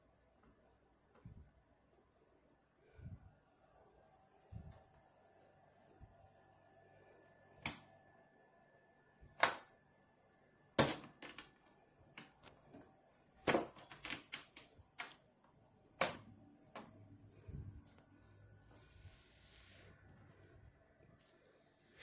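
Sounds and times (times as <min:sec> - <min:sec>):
hard objects clicking and knocking: 0:10.8 - 0:12.4.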